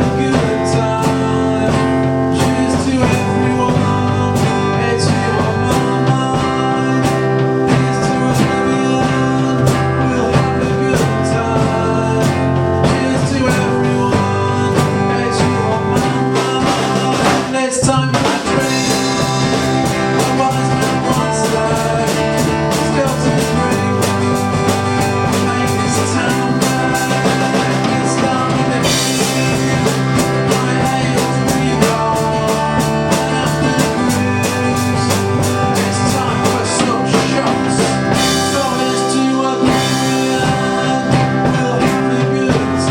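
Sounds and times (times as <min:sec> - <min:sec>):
bass guitar: 0:00.0 - 0:42.9
drum kit: 0:00.0 - 0:42.9
guitar: 0:00.0 - 0:42.9.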